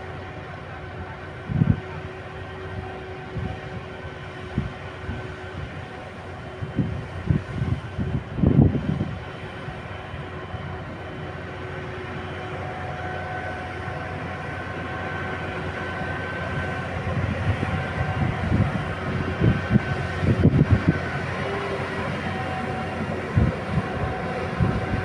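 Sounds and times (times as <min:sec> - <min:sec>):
heavy diesel machinery drone: 0:00.0 - 0:25.0
uneven low rumbling: 0:13.7 - 0:25.0.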